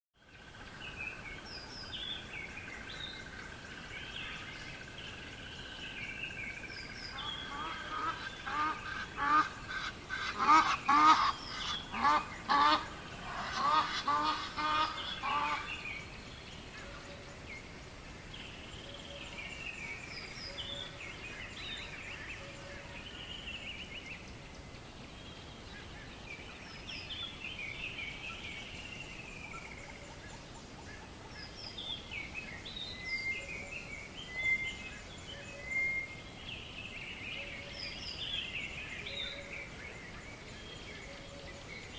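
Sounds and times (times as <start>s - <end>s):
birdsong: 0.2s - 41.9s
bird calling loudly: 7.1s - 15.8s.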